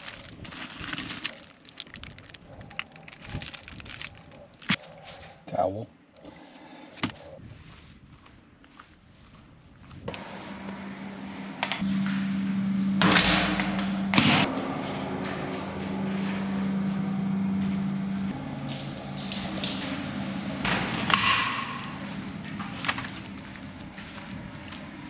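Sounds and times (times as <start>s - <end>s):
steady hum: 10.1s - 25.0s
shower water spraying: 18.4s - 24.9s
sharp knocks: 20.6s - 22.3s.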